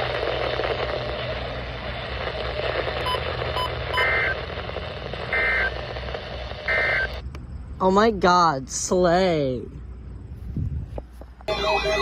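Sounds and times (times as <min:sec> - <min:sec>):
radio hiss: 0:00.0 - 0:07.2
digital data tone bursts: 0:03.0 - 0:04.5, 0:05.3 - 0:06.0, 0:06.6 - 0:07.2.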